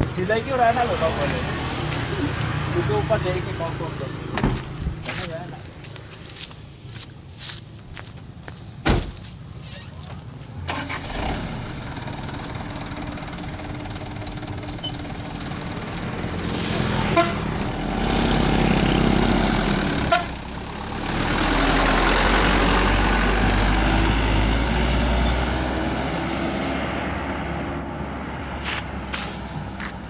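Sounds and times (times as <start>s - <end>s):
heavy vehicles passing: 0.0s - 6.8s, 9.4s - 30.0s
short horn toot: 17.0s - 17.5s.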